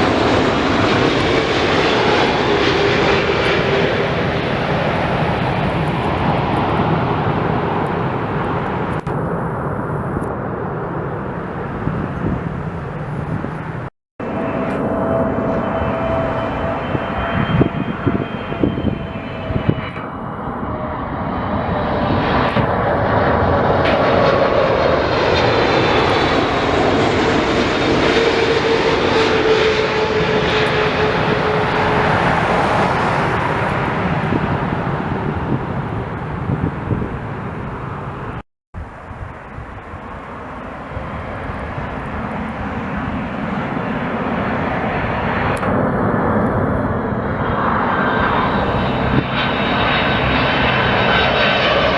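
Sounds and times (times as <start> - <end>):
jet airliner passing: 0.0 - 51.9.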